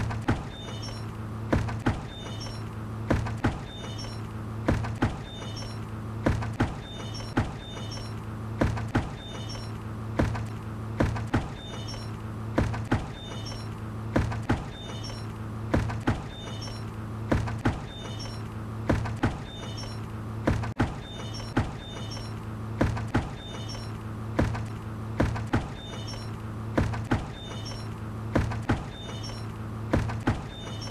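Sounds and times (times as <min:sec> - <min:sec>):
steady low hum: 0:00.0 - 0:30.9
faint high squeaks: 0:00.4 - 0:01.1, 0:01.8 - 0:02.8, 0:03.4 - 0:04.3, 0:05.0 - 0:05.9, 0:06.6 - 0:08.2, 0:09.1 - 0:09.8, 0:11.4 - 0:12.2, 0:12.8 - 0:13.8, 0:14.5 - 0:15.4, 0:16.1 - 0:18.5, 0:19.2 - 0:20.1, 0:20.9 - 0:22.4, 0:23.1 - 0:24.0, 0:25.6 - 0:30.9.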